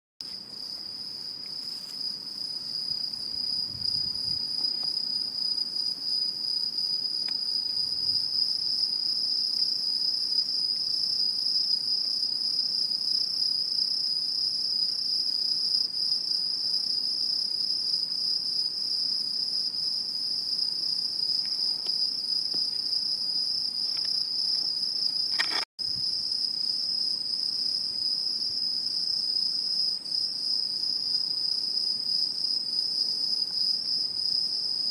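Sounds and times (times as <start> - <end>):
insect high-pitched trill: 0.2 - 34.9.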